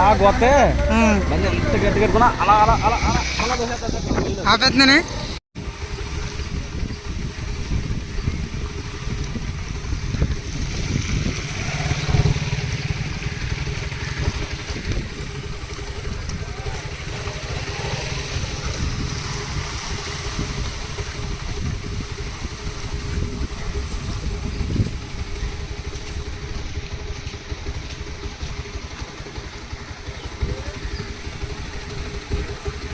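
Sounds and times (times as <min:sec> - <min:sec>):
motorbike engine running: 0:00.0 - 0:32.9
floodwater rushing: 0:05.0 - 0:32.9.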